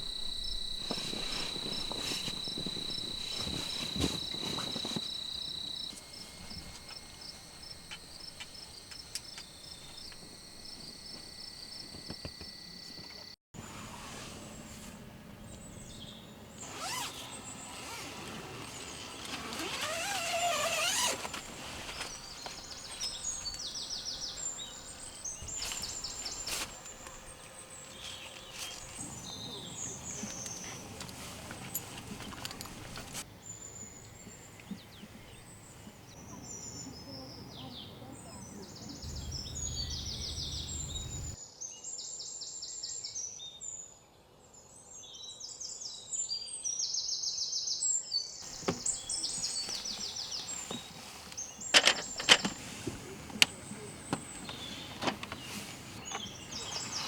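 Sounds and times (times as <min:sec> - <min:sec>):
crickets trilling: 0:00.0 - 0:13.4, 0:16.6 - 0:41.4, 0:48.4 - 0:57.0
insect chirps: 0:00.0 - 0:13.4, 0:16.6 - 0:36.9, 0:38.6 - 0:41.4, 0:48.4 - 0:52.6
rustling and handling knocks: 0:48.5 - 0:57.0.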